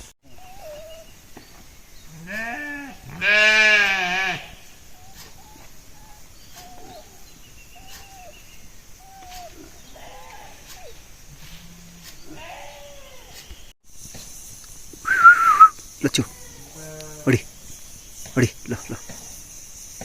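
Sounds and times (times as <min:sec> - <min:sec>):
sheep bleating: 0:02.2 - 0:04.6, 0:11.8 - 0:13.3
faint short calls: 0:15.0 - 0:17.4.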